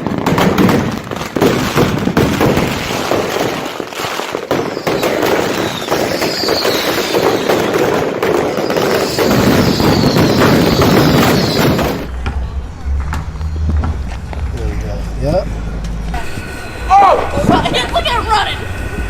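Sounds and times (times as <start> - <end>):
falling firework whistles: 0.0 - 12.1
fireworks cracks and bangs: 0.0 - 15.1.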